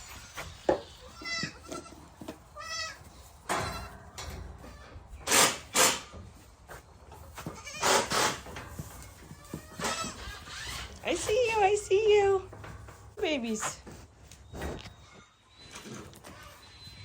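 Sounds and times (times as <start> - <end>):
goats bleating: 0.0 - 3.0, 7.4 - 8.4, 9.0 - 11.3.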